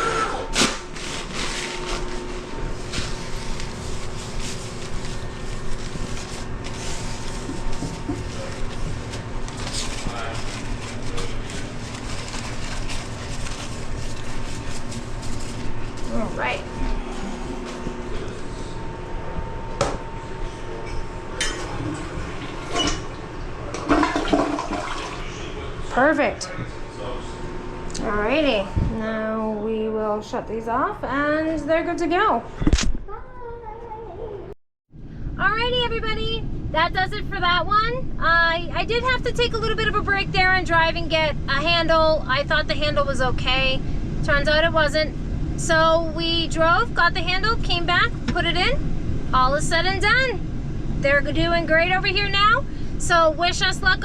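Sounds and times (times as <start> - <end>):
paper towels scrubbing: 0.0 - 17.8
background hum: 0.0 - 54.0
toilet tank refilling: 21.9 - 25.5.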